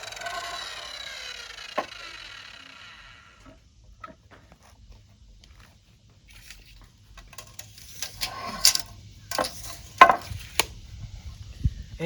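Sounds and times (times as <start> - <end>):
lumber and hand tools clattering: 0.0 - 4.7, 7.2 - 10.4.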